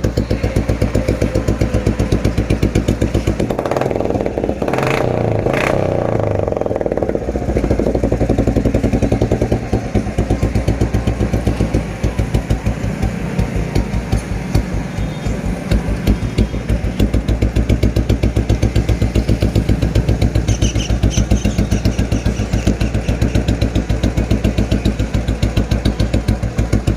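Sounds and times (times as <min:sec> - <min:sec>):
motorcycle engine idling: 0:00.0 - 0:26.9.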